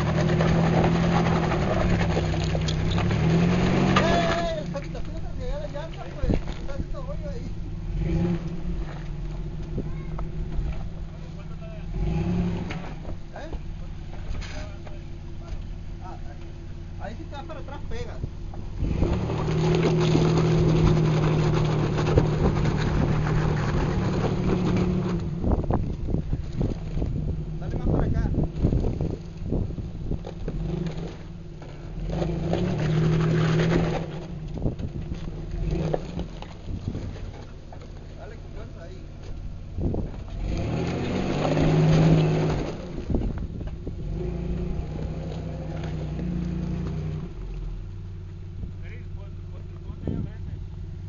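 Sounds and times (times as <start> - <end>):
engine revving hard: 0.0 - 4.7, 7.8 - 10.8, 11.5 - 13.0, 18.7 - 25.7, 31.9 - 34.4, 39.9 - 43.2, 44.0 - 47.4
off-road vehicle engine under load: 0.0 - 51.0.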